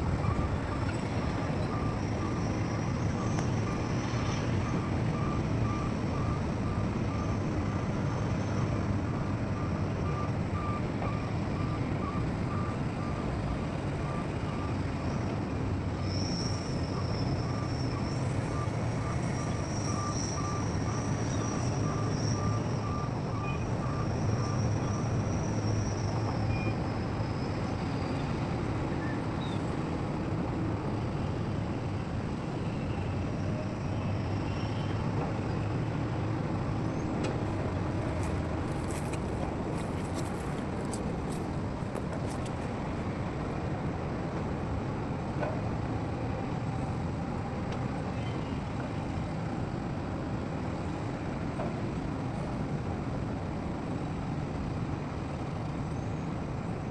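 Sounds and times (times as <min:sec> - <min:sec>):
reversing alarm beeping: 0:00.1 - 0:04.0, 0:04.6 - 0:07.6, 0:16.1 - 0:26.9.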